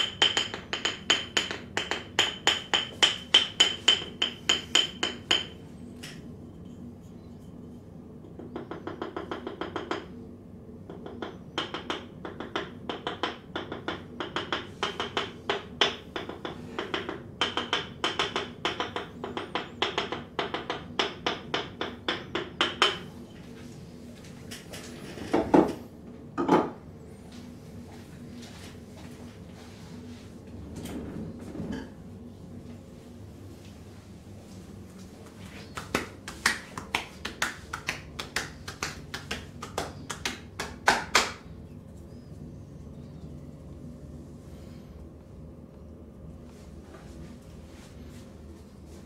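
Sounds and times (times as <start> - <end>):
hands chopping and slapping: 35.7 - 41.4.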